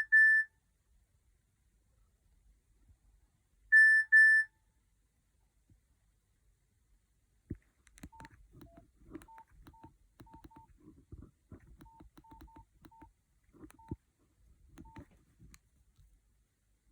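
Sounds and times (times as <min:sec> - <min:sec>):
phone keys clicking: 0:07.5 - 0:14.0, 0:14.7 - 0:15.6
short high beeps: 0:11.7 - 0:14.0, 0:14.8 - 0:15.1.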